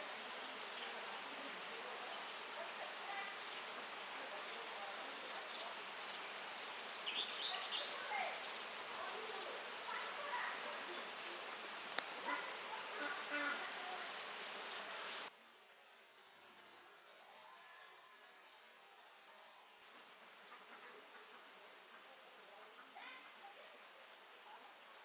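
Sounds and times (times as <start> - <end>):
insects droning: 0.0 - 25.0
bird chirps: 7.0 - 8.8.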